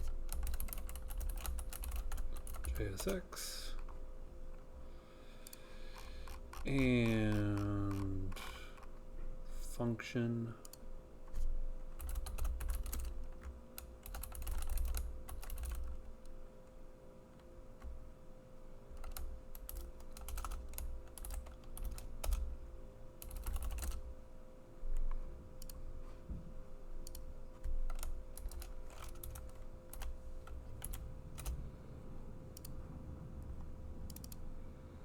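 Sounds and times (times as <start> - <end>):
typing on a keyboard: 0.0 - 4.0, 5.5 - 8.9, 12.0 - 16.2, 19.0 - 22.5, 23.2 - 24.1, 27.0 - 31.6, 34.1 - 34.4
faint steady hum: 0.0 - 35.0.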